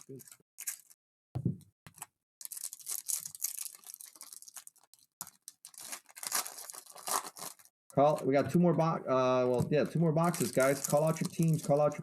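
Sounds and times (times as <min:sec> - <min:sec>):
cards and wrappers rustling: 0:00.0 - 0:01.0, 0:01.9 - 0:08.3, 0:09.6 - 0:12.0
plastic packaging crinkling and tearing: 0:00.0 - 0:01.0, 0:01.9 - 0:08.2, 0:10.2 - 0:12.0.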